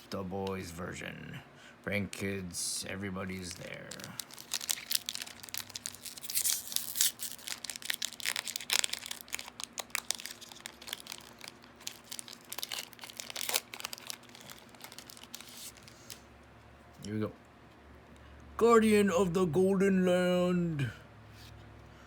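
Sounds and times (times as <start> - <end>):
foil wrapper crinkling and tearing: 3.4 - 16.3.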